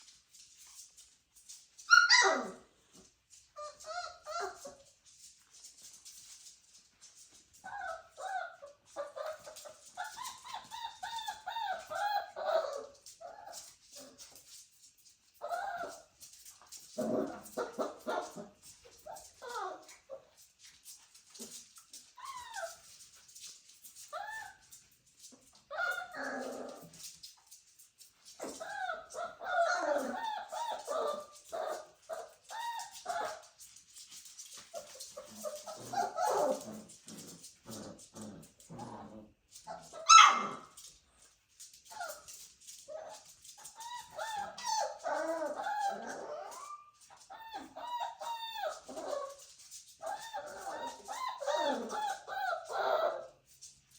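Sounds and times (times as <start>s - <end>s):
puppies whimpering and yipping: 1.5s - 2.7s, 3.4s - 5.0s, 7.2s - 14.6s, 15.3s - 27.4s, 28.2s - 40.9s, 41.6s - 53.4s
loud puppy yelp: 1.8s - 2.7s, 3.6s - 4.8s, 7.6s - 14.1s, 28.4s - 33.4s, 39.7s - 40.8s, 42.9s - 49.4s, 50.0s - 53.4s.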